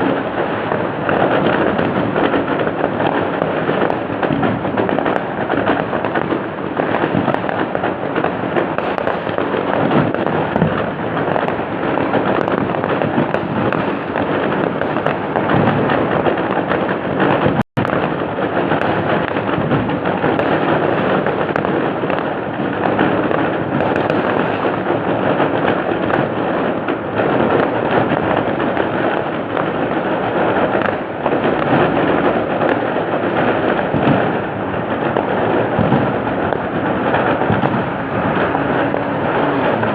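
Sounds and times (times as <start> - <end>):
fireworks bangs and crackling: 0.0 - 39.9.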